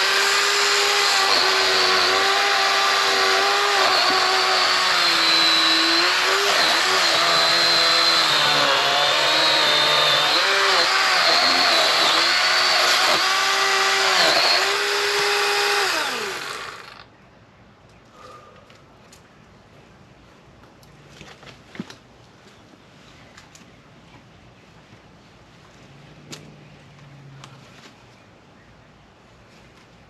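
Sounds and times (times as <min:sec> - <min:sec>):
electric chainsaw cutting wood: 0:00.0 - 0:17.1.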